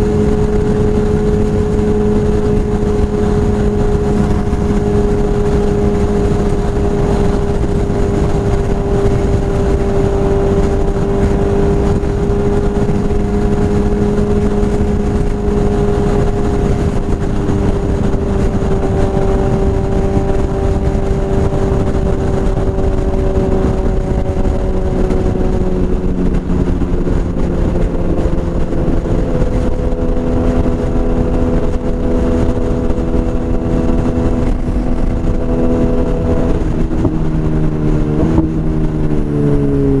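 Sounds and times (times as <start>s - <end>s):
motorcycle engine running: 0.0s - 40.0s.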